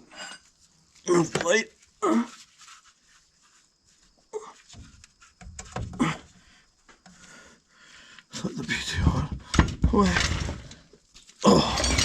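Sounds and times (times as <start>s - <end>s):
man breathing hard: 6.0s - 8.3s.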